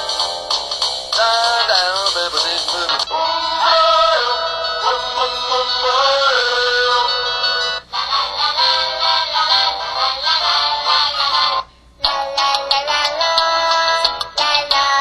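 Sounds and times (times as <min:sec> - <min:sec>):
polyphonic ringtone melody: 0:00.0 - 0:07.8.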